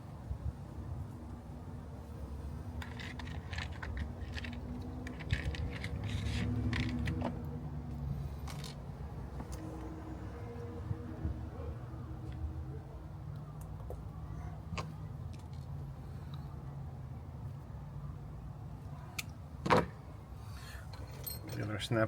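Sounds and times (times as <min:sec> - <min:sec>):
hand tools clicking and rattling: 0:02.7 - 0:07.4, 0:20.8 - 0:21.8.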